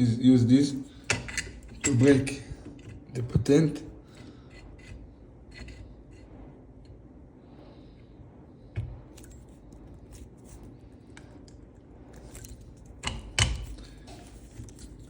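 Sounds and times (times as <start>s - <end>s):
tool clicking and scraping in lock: 1.0s - 3.2s, 4.2s - 6.2s.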